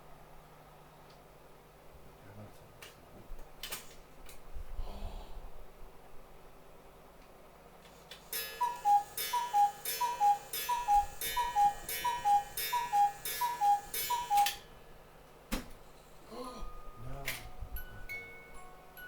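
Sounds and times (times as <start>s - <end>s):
cuckoo clock calls: 8.3s - 14.6s.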